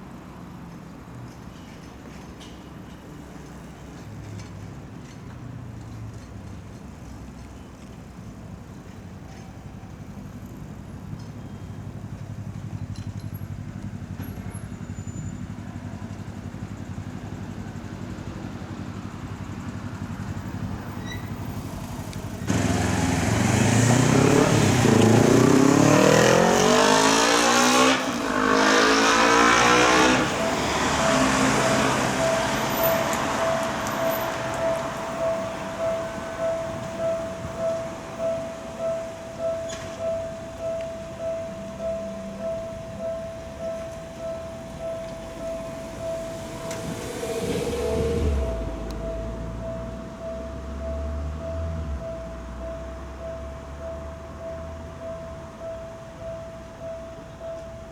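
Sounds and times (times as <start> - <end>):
traffic hum: 0.0 - 57.9
vehicle accelerating away: 19.4 - 55.0
steady high tone: 22.5 - 57.9.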